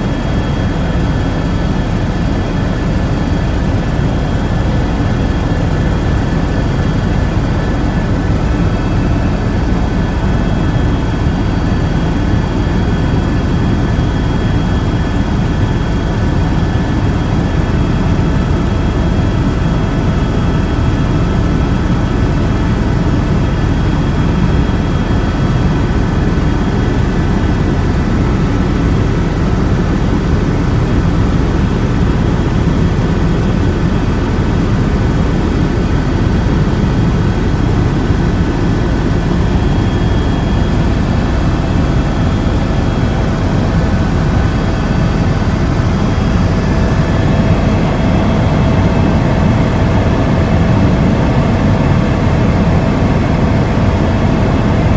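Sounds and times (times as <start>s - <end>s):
engine drone: 35.4s - 54.9s.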